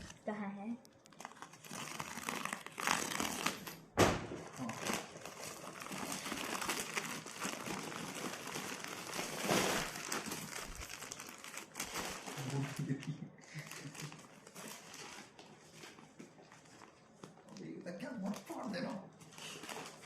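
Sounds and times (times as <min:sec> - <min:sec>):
plastic packaging crinkling: 0:00.0 - 0:20.0
sharp thump: 0:04.0 - 0:04.4.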